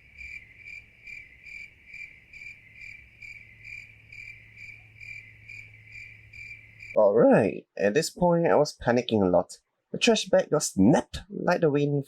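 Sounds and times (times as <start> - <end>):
insect chirping: 0.0 - 7.0.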